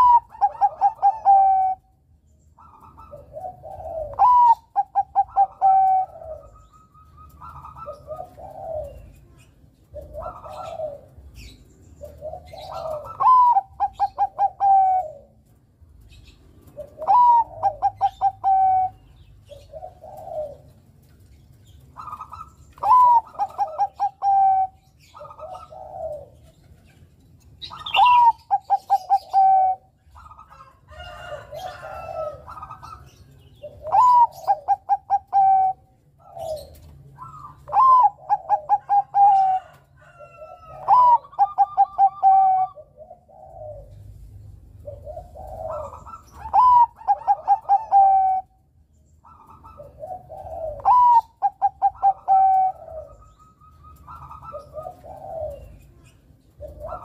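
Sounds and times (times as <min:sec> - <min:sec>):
dove singing clipped notes: 0:00.0 - 0:57.0
soft low dove coos: 0:02.7 - 0:15.6, 0:16.7 - 0:21.2, 0:22.0 - 0:26.8, 0:31.3 - 0:48.6, 0:49.3 - 0:57.0.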